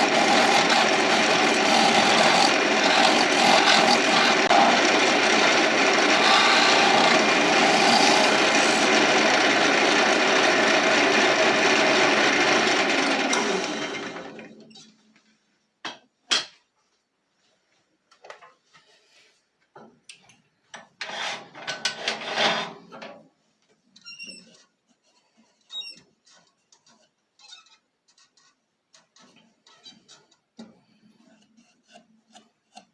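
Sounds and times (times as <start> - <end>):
lathe tool scraping wood: 0.0 - 14.4.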